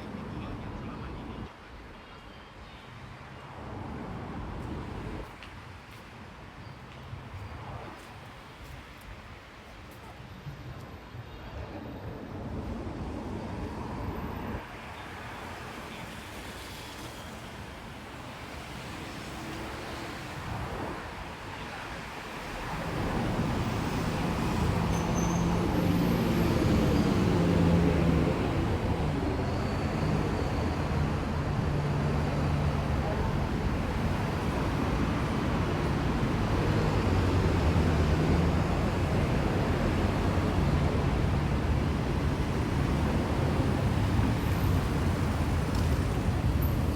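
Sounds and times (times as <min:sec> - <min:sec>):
street traffic noise: 0:00.0 - 0:46.9.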